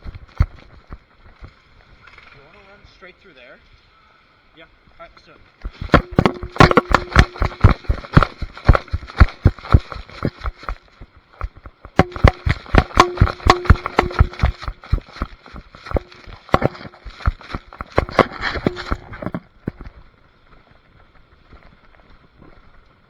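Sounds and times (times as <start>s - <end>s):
running footsteps: 5.6s - 22.9s.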